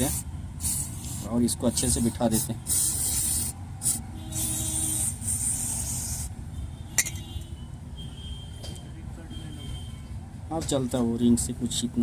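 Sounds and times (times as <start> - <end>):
aerosol spray hissing: 0.0 - 6.3.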